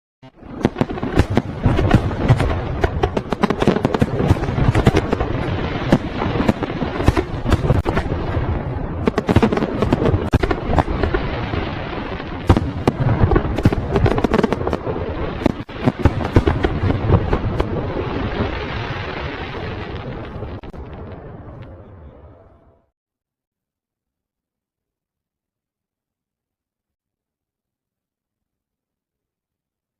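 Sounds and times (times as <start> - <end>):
fireworks bangs and crackles: 0.3 - 22.4.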